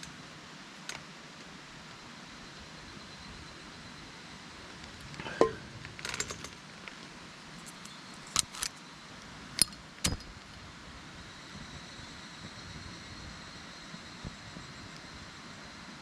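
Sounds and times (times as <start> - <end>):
steady background hiss: 0.0 - 16.0
metal clinks and knocks: 5.2 - 6.6.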